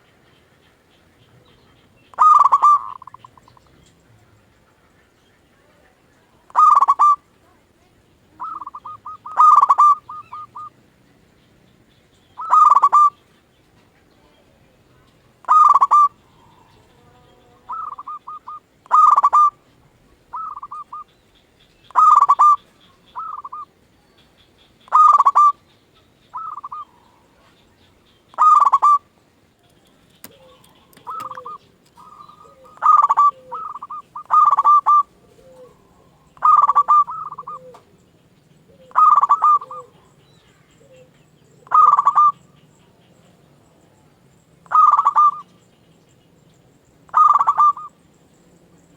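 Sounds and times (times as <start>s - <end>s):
doves cooing: 0.0s - 11.3s, 12.1s - 45.9s, 46.8s - 48.1s.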